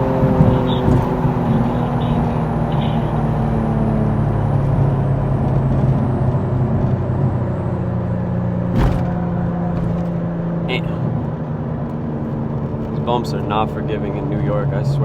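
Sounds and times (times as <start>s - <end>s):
car engine cruising from cabin: 0.0s - 15.0s.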